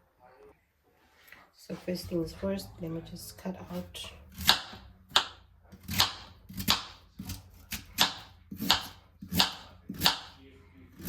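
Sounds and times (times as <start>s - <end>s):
knife chopping on cutting board: 3.7s - 10.4s.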